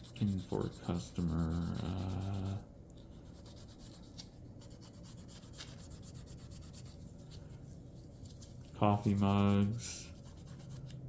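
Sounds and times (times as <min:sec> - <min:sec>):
hand rubbing on wood: 0:00.0 - 0:02.6.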